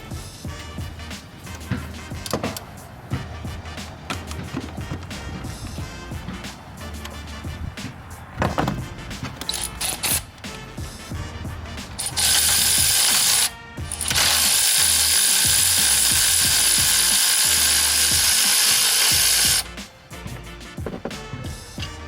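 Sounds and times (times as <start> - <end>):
tool handling clicks and knocks: 1.5 - 5.5, 7.8 - 10.6
cordless electric ratchet whirring: 12.0 - 19.6.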